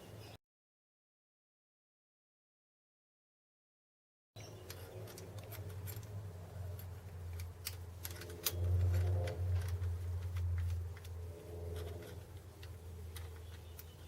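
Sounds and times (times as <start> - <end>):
metal parts clicking and clinking: 4.4 - 14.0
steady low hum: 4.4 - 14.0.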